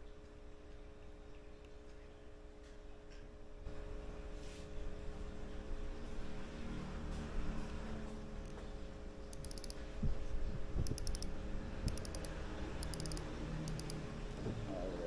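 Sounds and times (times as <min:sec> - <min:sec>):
fishing reel clicking: 0:09.4 - 0:09.8, 0:10.8 - 0:11.3, 0:11.9 - 0:14.0.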